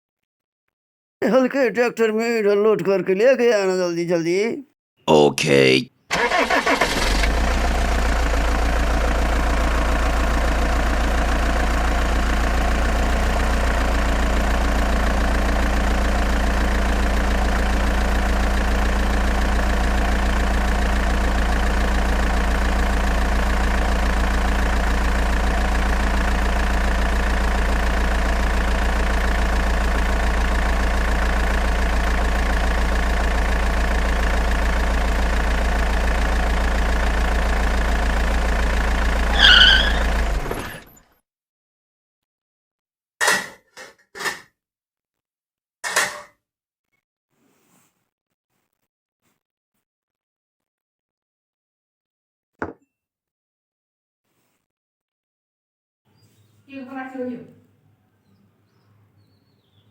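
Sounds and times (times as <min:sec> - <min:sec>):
tractor engine running: 0:06.1 - 0:41.0.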